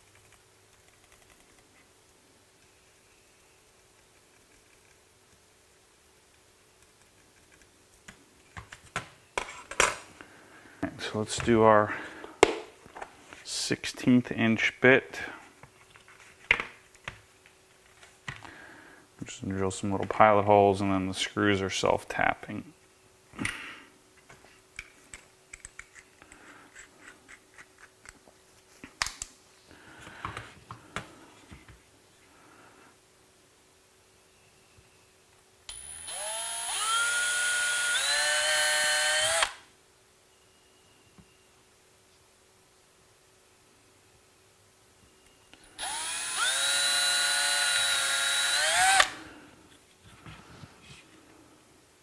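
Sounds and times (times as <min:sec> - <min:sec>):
power drill whine: 0:35.7 - 0:39.6, 0:45.7 - 0:49.2.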